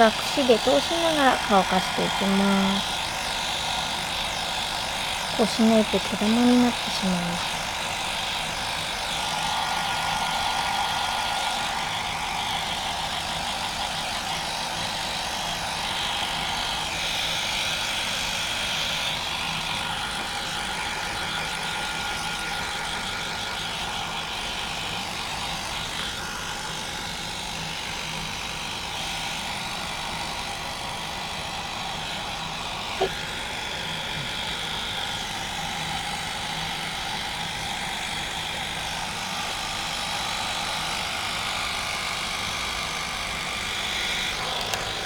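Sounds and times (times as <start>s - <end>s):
hair dryer running: 0.0s - 45.0s.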